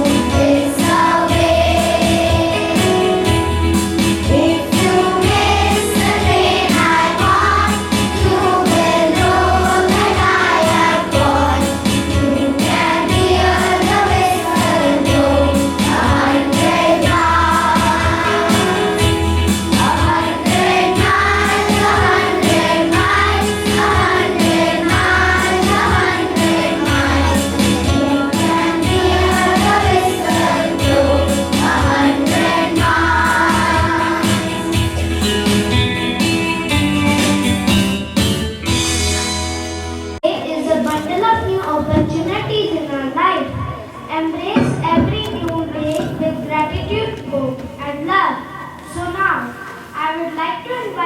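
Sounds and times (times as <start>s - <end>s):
group of voices singing: 0.0s - 3.2s, 4.3s - 34.9s.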